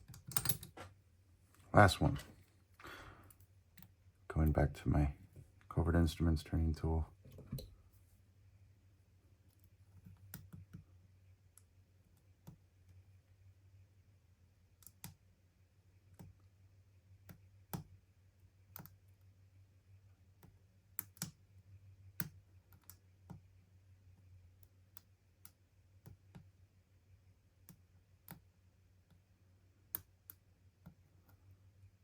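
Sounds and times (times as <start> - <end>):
lock pick clicking in padlock: 0.0 - 0.7.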